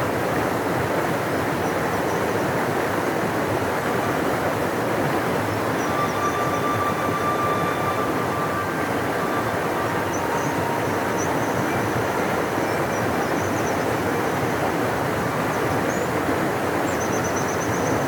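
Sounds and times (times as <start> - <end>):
river rushing: 0.0 - 18.0
faint thin whistle tone: 5.5 - 16.1.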